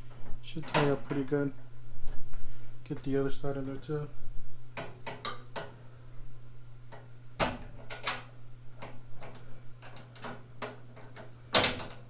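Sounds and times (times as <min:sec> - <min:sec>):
small metal clicks and knocks: 0:04.8 - 0:05.8, 0:06.9 - 0:12.0.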